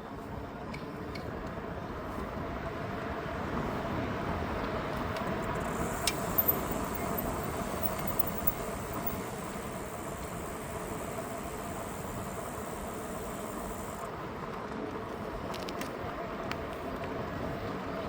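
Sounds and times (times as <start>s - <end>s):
electric bike tyre and drive noise: 0.0s - 18.0s
faint even hum: 0.0s - 18.0s
quick ticks: 5.1s - 14.1s.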